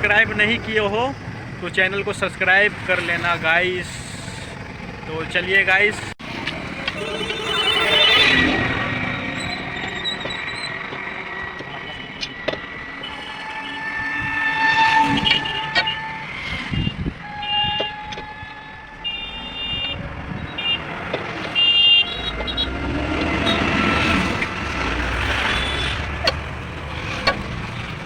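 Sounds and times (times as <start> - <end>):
traffic rumble: 0.0 - 28.0
long horn blasts: 13.0 - 26.2
short repeated horn beeps: 14.7 - 20.9.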